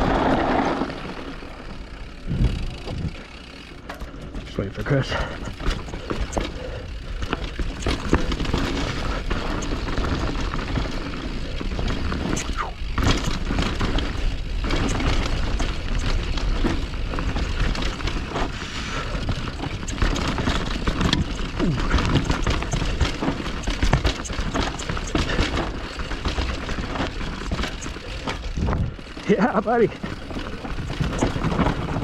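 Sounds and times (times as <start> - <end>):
bike rattling over bumps: 0.0 - 32.0
bike tyre noise: 0.0 - 32.0
wind: 0.0 - 32.0.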